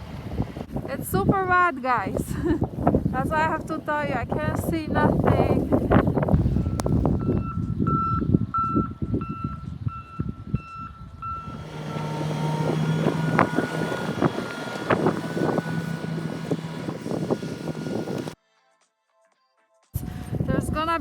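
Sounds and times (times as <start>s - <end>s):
wind buffeting microphone: 0.0s - 18.4s, 20.0s - 21.0s
low engine hum: 2.0s - 18.4s
reversing alarm beeping: 6.6s - 18.4s.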